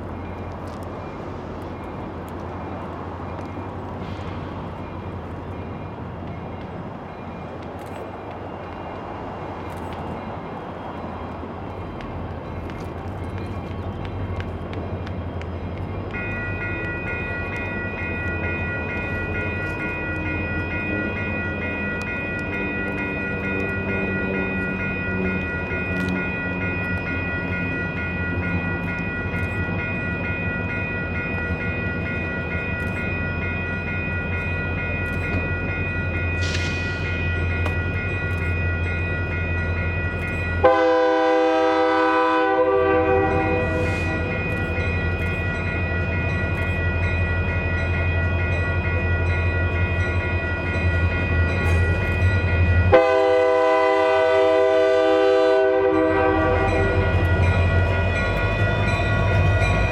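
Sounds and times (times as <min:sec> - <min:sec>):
diesel locomotive engine rumble: 0:00.0 - 0:59.9
locomotive air horn blast: 0:40.6 - 0:44.3, 0:52.9 - 0:57.0.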